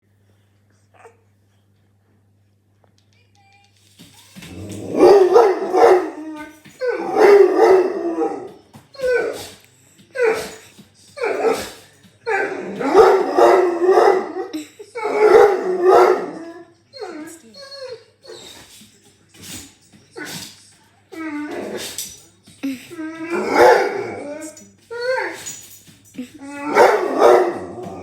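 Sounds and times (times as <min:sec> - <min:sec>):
dog howling and barking: 0:04.5 - 0:09.5, 0:11.2 - 0:18.4, 0:21.2 - 0:22.0, 0:23.0 - 0:25.6, 0:26.4 - 0:28.0.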